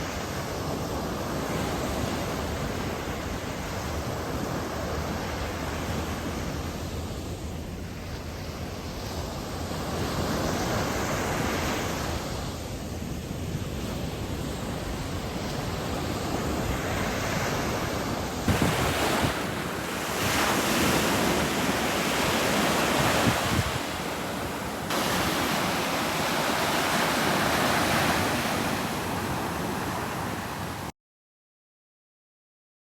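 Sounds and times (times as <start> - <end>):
ocean waves on shore: 0.0 - 30.9.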